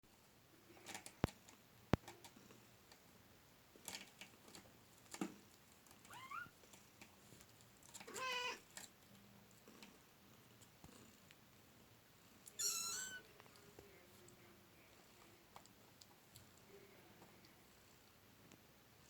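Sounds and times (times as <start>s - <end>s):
kittens tapping and scuffling: 0.7s - 3.0s, 3.7s - 10.0s
kitten mewing: 12.6s - 13.2s.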